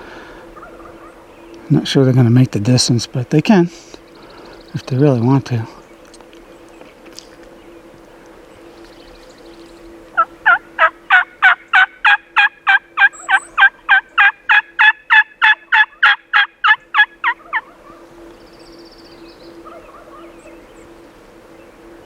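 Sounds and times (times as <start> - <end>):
faint steady hum: 0.0 - 22.0
turkey yelps: 0.6 - 1.2, 10.2 - 18.0, 19.6 - 20.5.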